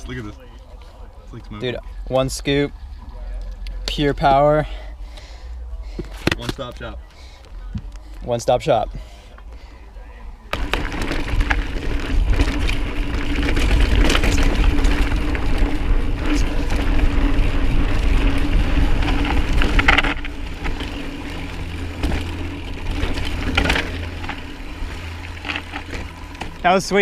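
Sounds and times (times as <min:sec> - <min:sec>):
bike clicks and rattles: 0:05.9 - 0:08.8, 0:10.5 - 0:27.0
tyre noise on dirt: 0:10.4 - 0:27.0
wind rumble on microphone: 0:10.6 - 0:26.5.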